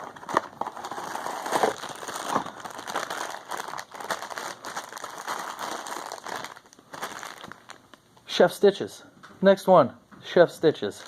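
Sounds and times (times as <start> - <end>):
foil wrapper crinkling: 0.0 - 8.0.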